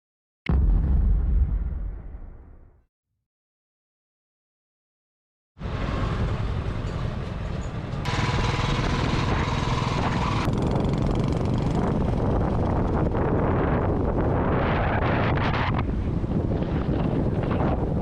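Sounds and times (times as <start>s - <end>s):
wind rush on microphone: 8.0s - 18.0s
motorcycle engine running: 8.1s - 12.9s.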